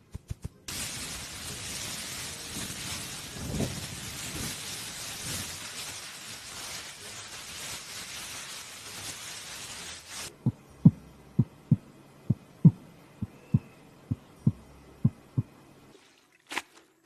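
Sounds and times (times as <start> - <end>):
heartbeat thumps: 10.3 - 15.5.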